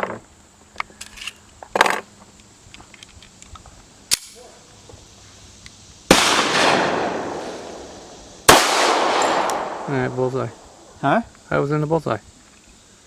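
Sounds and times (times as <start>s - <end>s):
pistol shots with echo: 6.1s - 10.9s.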